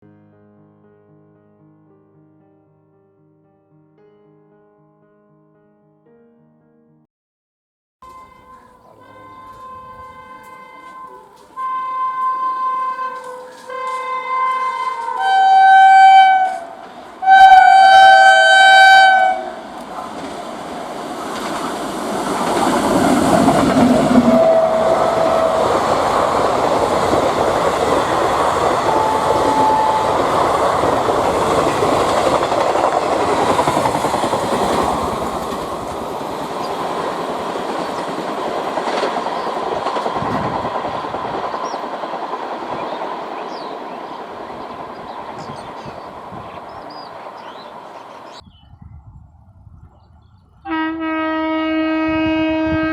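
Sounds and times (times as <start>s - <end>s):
locomotive air horn blasts: 8.0s - 19.7s, 23.2s - 26.2s, 28.6s - 30.7s, 50.7s - 52.9s
train wheels clattering on rails: 19.7s - 48.4s.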